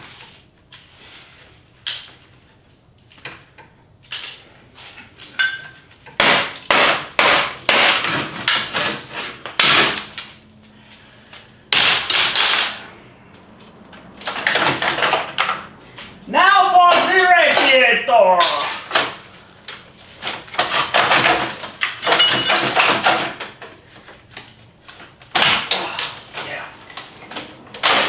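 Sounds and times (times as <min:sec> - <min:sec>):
metallic ring: 0:05.4 - 0:05.8.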